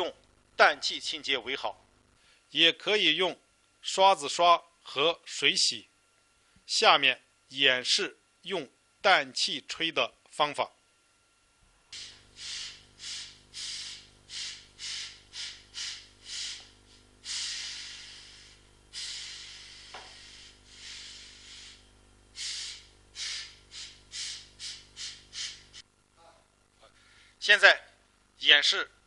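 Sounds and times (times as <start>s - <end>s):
steady low hum: 0.0s - 29.0s
compressed gas hissing in bursts: 11.9s - 25.8s.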